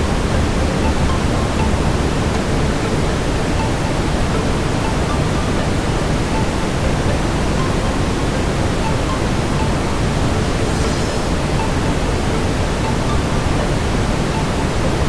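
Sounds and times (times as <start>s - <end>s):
brown noise hiss: 0.0s - 15.0s.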